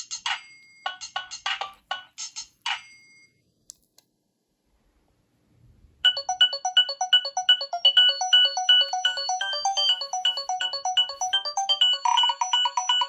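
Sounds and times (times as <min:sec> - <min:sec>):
electronic phone ringtone melody: 0:06.1 - 0:13.0.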